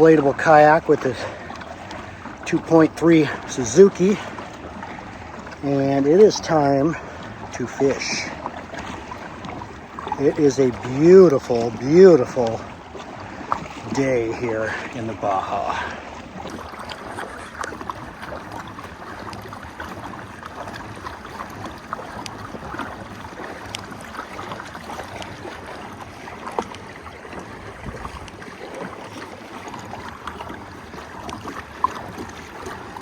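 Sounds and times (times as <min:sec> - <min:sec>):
water lapping around kayak: 0:00.0 - 0:33.0.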